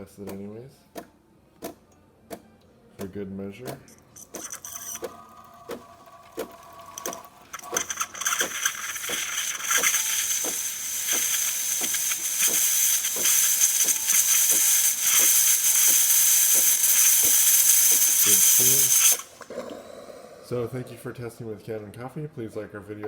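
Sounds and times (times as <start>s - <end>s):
espresso machine clicking: 3.7s - 19.6s
steam wand hissing: 4.2s - 20.7s.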